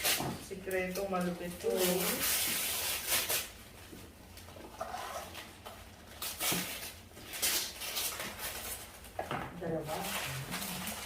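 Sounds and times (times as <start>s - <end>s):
packaging rustling: 0.0s - 11.0s.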